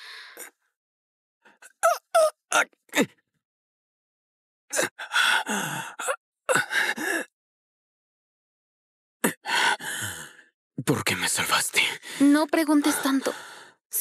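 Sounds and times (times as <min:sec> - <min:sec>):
person gasping and groaning: 0:01.6 - 0:03.2, 0:04.7 - 0:07.3, 0:09.2 - 0:10.4.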